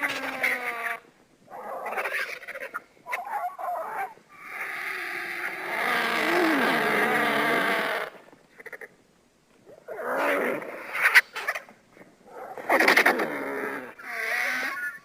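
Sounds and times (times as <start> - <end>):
vulture calls: 0.0 - 9.0, 10.0 - 11.7, 12.5 - 15.0.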